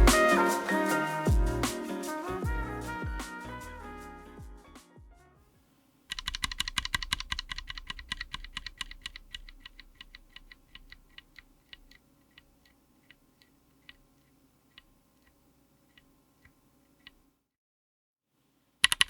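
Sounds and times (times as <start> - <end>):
mechanical keyboard typing: 6.1 - 12.5.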